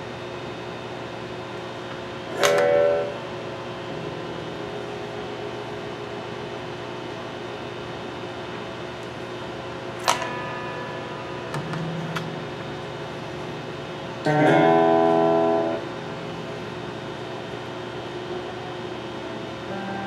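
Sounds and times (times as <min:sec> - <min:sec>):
electric guitar plucked notes: 0:02.2 - 0:20.0
electric guitar strummed chord: 0:02.3 - 0:07.3, 0:10.0 - 0:17.5, 0:19.6 - 0:20.0.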